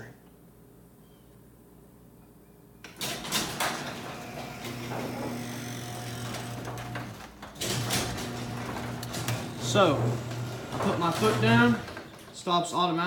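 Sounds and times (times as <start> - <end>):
garage door opener motor humming: 2.9 - 12.5.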